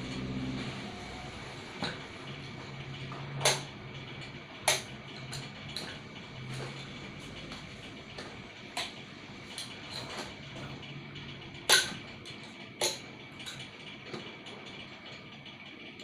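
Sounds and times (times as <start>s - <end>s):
metal tools clicking and tapping: 3.1s - 10.3s, 11.2s - 13.7s.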